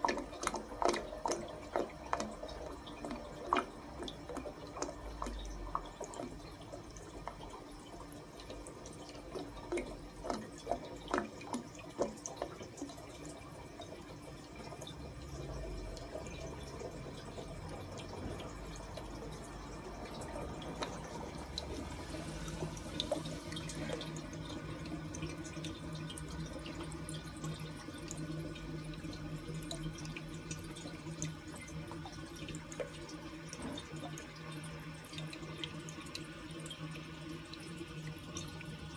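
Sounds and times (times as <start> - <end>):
cistern refilling with running water: 0.0 - 38.9
toilet gurgling: 0.0 - 38.9.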